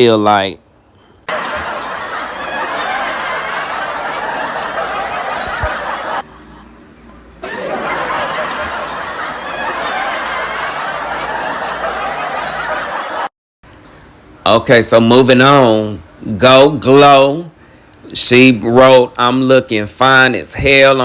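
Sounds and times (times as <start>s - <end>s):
crowd laughing: 1.3s - 6.8s, 7.4s - 13.3s.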